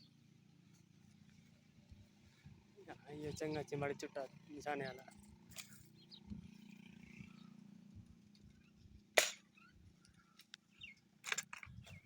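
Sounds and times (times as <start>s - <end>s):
air gun firing: 9.2s - 9.4s.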